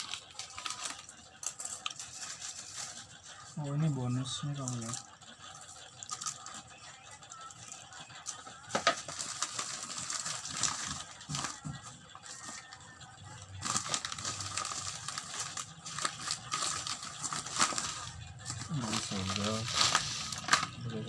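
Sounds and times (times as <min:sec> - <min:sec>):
packaging crinkling: 0:00.0 - 0:03.2, 0:08.7 - 0:11.6, 0:13.6 - 0:20.9.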